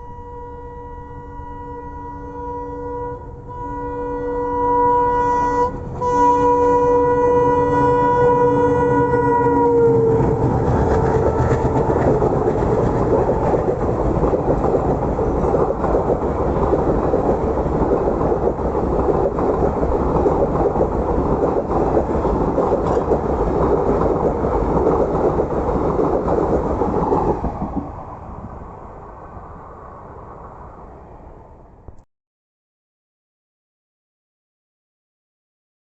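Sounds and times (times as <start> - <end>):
locomotive horn: 0.0 - 12.4
train rumbling past: 0.0 - 32.0
wheels clicking over rail joints: 8.8 - 28.6.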